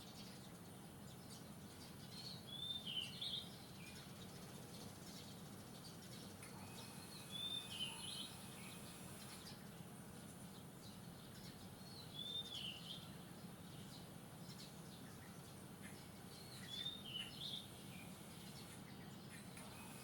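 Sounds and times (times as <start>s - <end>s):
faint outdoor hiss: 0.0s - 20.0s
bird whistling: 6.7s - 9.2s.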